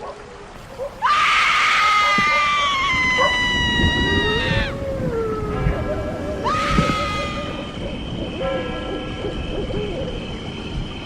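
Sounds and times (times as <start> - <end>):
cat yowling: 0.7 - 7.8.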